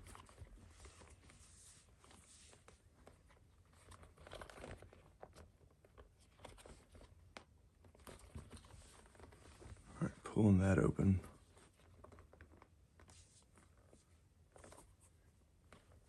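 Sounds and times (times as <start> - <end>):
leather glove rustling and clicking: 0.0 - 9.9.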